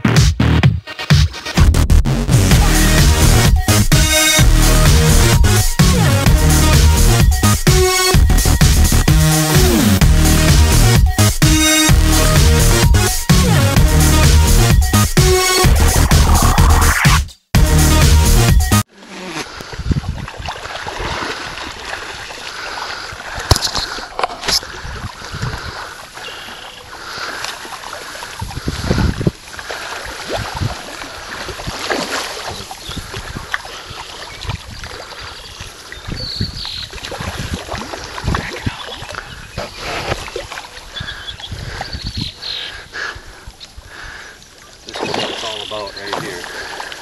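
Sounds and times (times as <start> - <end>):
wading through floodwater: 18.9 - 47.0.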